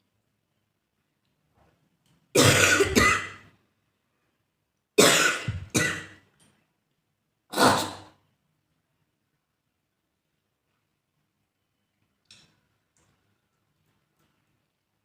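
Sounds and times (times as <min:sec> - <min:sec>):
person coughing: 0:02.4 - 0:03.4, 0:05.0 - 0:06.2, 0:07.5 - 0:08.2.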